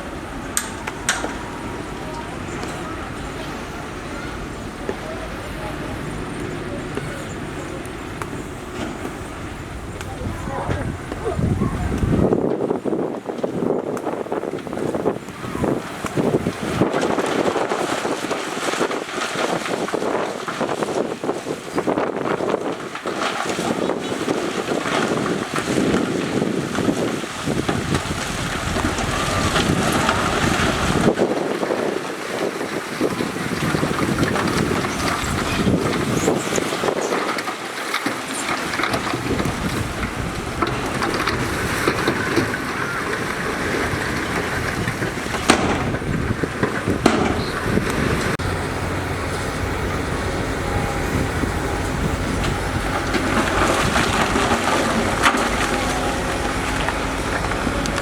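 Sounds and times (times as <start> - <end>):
construction machinery engine rumble: 0.0 - 58.0
wind buffeting microphone: 0.0 - 58.0.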